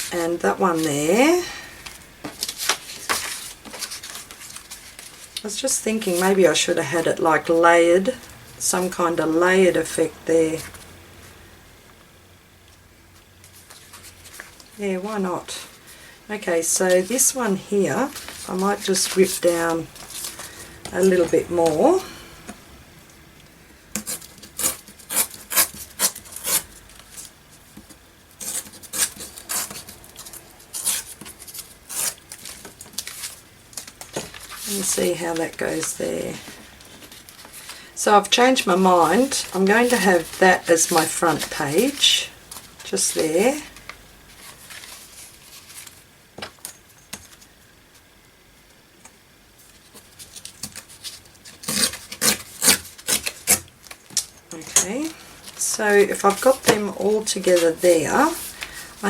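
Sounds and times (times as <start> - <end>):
paper rustling: 1.8 - 5.4, 18.0 - 22.2, 24.0 - 46.6, 49.6 - 59.0
paper tearing: 28.4 - 33.4, 50.3 - 53.7.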